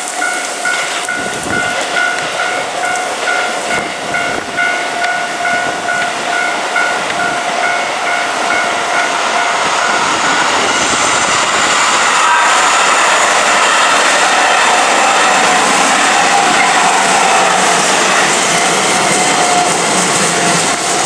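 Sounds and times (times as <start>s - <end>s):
train passing: 0.0s - 21.0s
level crossing bell ringing: 0.1s - 10.1s.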